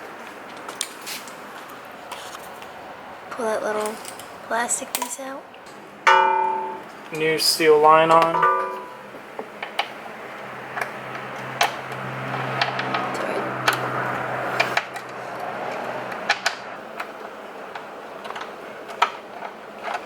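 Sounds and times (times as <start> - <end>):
low steady hum: 1.4 - 9.4.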